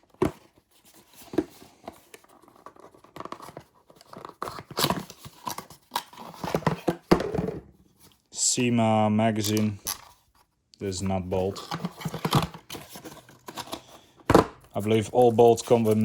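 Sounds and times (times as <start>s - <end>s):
packaging rustling: 11.3s - 16.0s
plastic parts clicking and knocking: 11.5s - 14.8s.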